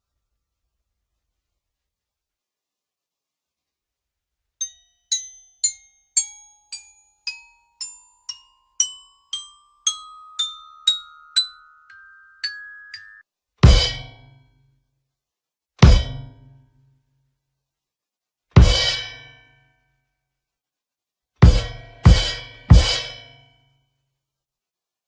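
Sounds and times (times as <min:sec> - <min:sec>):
bell-like mallet percussion notes: 0:04.6 - 0:13.2.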